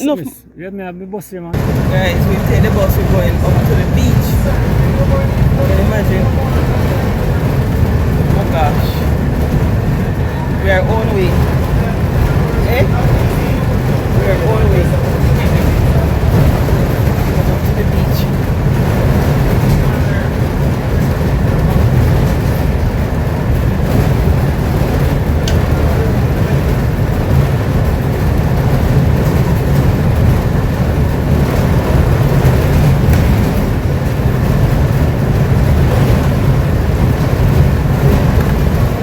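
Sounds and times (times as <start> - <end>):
bus engine and road rumble: 0.0 - 39.0.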